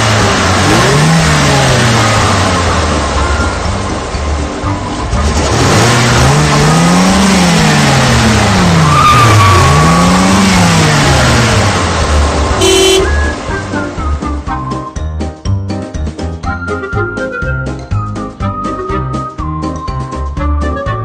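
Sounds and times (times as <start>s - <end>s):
car engine revving: 0.0s - 14.6s
car horn toot: 12.5s - 13.6s.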